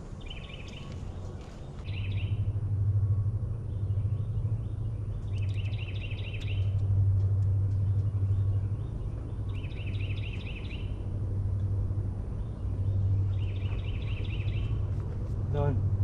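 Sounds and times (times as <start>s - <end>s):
steady low rumble: 0.0s - 16.0s
bird singing high chirps: 0.2s - 2.4s, 3.7s - 6.8s, 8.3s - 11.0s, 12.4s - 14.9s.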